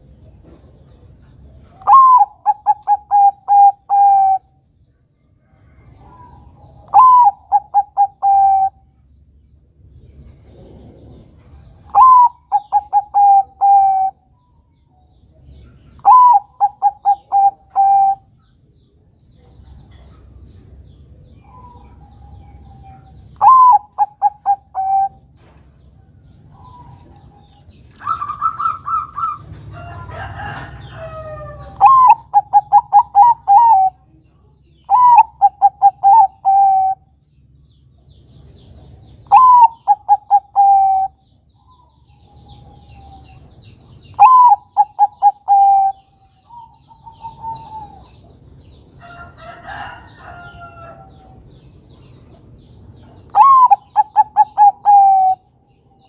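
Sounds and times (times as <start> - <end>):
dove cooing: 1.7 - 4.6, 6.0 - 8.9, 10.5 - 14.2, 15.8 - 18.3, 21.4 - 25.3, 26.5 - 34.1, 34.8 - 37.1, 39.2 - 43.4, 44.1 - 48.3, 53.3 - 55.5.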